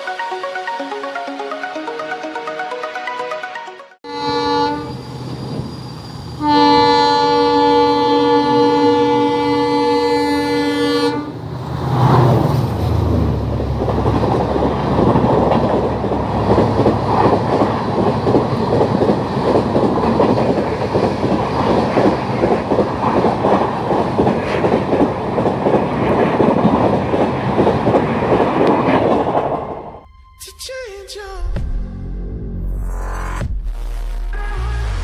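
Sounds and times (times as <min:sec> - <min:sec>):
train horn: 0:04.0 - 0:05.0, 0:06.4 - 0:11.4
train wheels clattering: 0:13.5 - 0:29.8.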